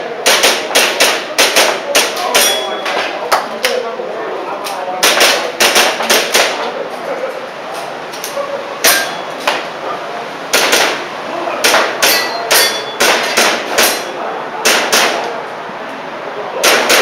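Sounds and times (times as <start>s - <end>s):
airsoft pistol shots: 0.2s - 2.6s, 5.0s - 6.6s, 10.5s - 11.0s, 11.6s - 15.3s, 16.6s - 17.0s.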